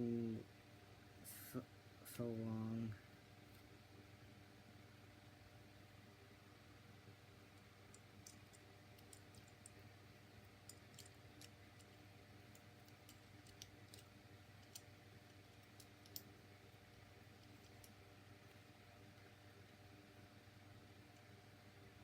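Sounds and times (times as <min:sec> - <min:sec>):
low steady hum: 0:00.0 - 0:22.0
plastic toy parts clicking: 0:10.6 - 0:11.9, 0:12.5 - 0:14.9.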